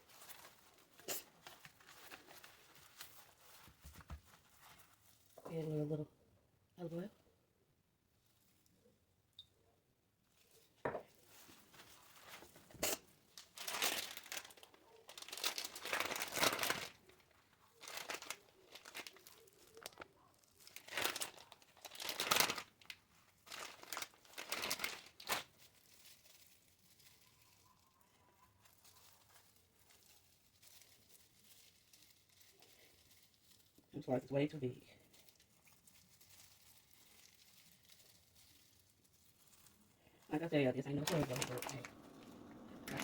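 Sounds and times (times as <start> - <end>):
faint handling noise: 0.0 - 5.7, 10.2 - 21.4
crinkling and rustling: 0.0 - 6.0, 8.0 - 9.2, 10.1 - 43.0.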